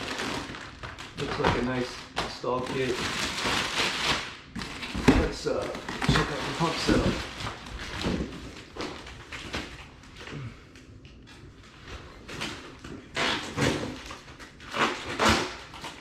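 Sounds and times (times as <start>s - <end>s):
packaging rustling and scraping: 0.0s - 10.3s, 11.3s - 16.0s.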